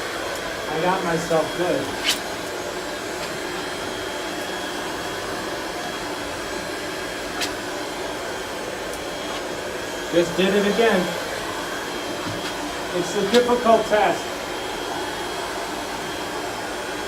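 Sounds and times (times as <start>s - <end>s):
heat gun blowing: 0.0s - 17.0s.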